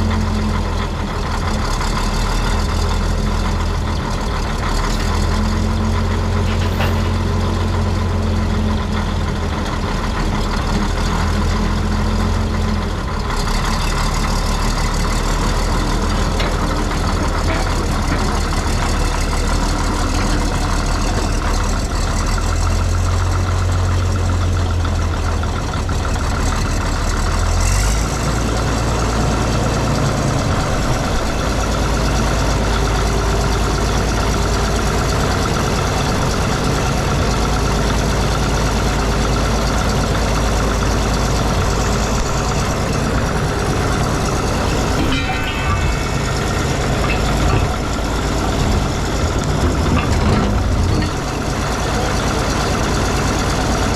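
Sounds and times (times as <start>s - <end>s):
diesel engine idling: 0.0s - 53.9s.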